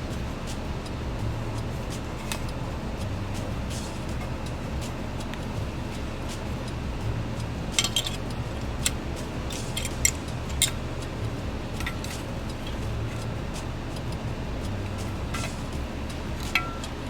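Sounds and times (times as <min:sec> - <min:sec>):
steady low hum: 0:00.0 - 0:17.0
small hard parts clicking: 0:06.3 - 0:17.0.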